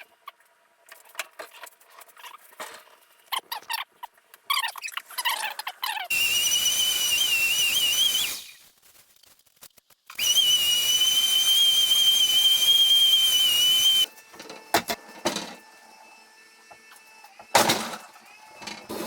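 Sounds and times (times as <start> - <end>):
high-pitched machine whine: 6.1 - 8.6, 10.2 - 19.0.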